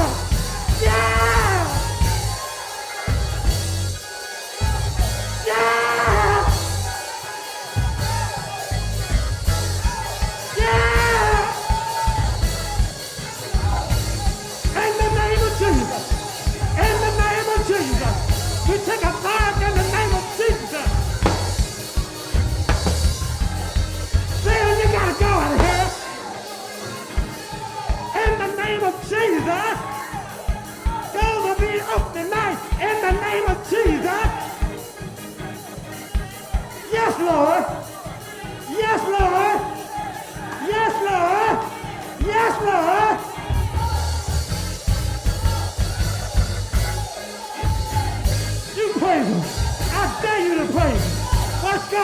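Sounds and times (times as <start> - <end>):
person singing wordless lines: 0.0 - 2.0, 5.3 - 7.2, 24.4 - 30.2
heavy bass beat: 0.0 - 36.9, 38.4 - 52.0
gospel band with drums: 0.0 - 52.0.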